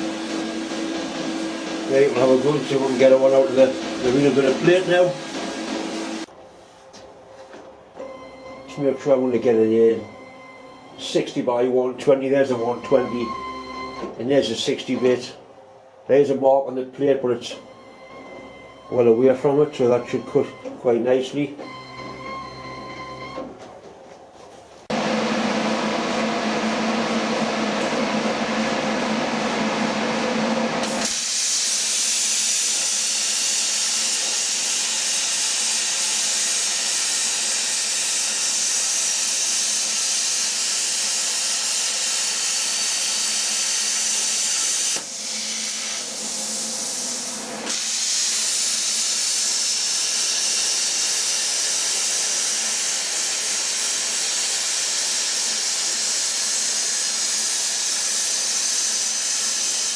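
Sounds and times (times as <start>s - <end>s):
plasma cutter hissing: 30.8s - 59.9s.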